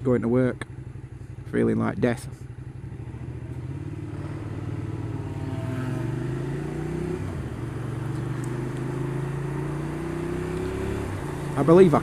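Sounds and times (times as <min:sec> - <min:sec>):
motorcycle engine accelerating: 0:02.0 - 0:12.0.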